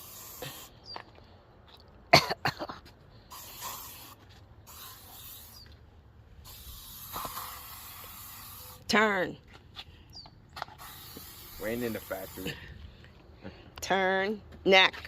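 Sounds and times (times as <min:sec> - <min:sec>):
spray can hissing: 0:00.0 - 0:00.8, 0:03.3 - 0:05.8, 0:06.4 - 0:08.9, 0:10.6 - 0:12.6.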